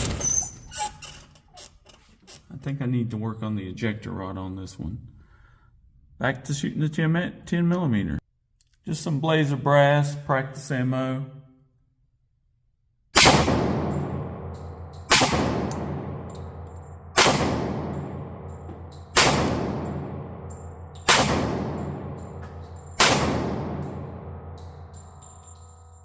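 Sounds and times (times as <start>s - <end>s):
pistol shots echoing: 13.2s - 25.3s.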